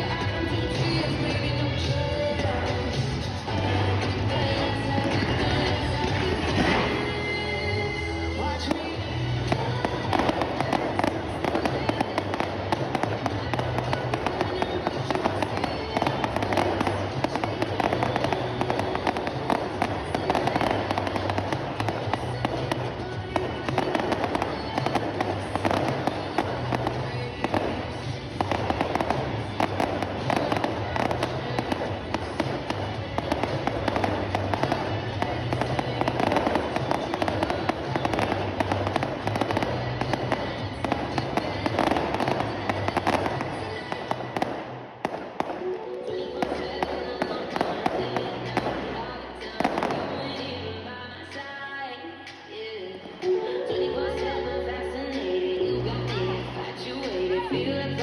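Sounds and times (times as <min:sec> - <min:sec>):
music with bass beat: 0:00.0 - 0:45.5
fireworks crackling and banging: 0:00.0 - 0:50.7.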